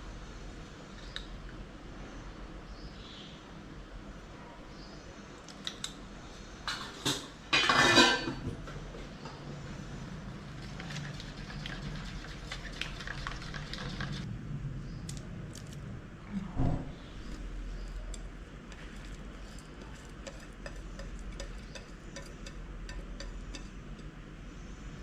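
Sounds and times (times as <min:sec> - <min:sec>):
utensils clinking against cookware: 0:06.7 - 0:08.5, 0:19.4 - 0:23.8
loud utensil clatter: 0:07.0 - 0:08.4.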